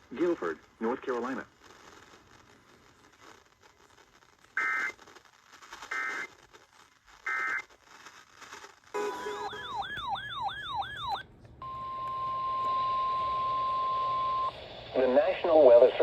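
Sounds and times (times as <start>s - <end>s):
digital data tone bursts: 9.0s - 14.6s.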